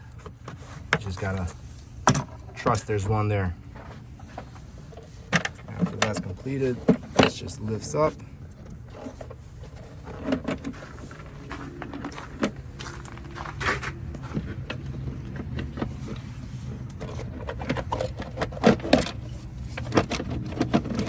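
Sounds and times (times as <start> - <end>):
low steady hum: 0.0 - 21.0
plastic knocks and scrapes: 3.7 - 7.8, 9.0 - 21.0.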